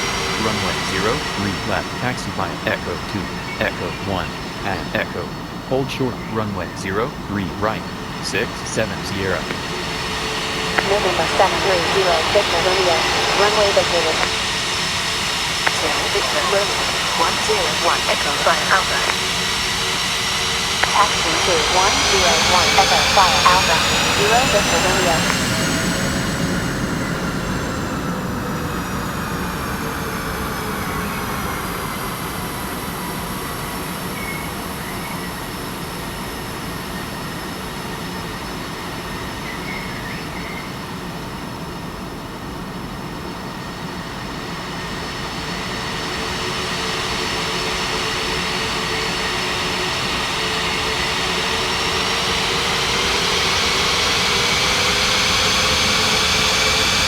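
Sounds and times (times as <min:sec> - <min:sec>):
jet engines roaring and whining: 0:00.0 - 0:57.0.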